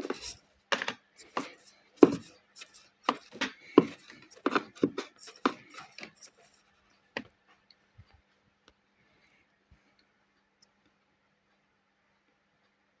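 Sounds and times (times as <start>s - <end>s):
hard parts clicking and knocking: 0.0s - 6.5s.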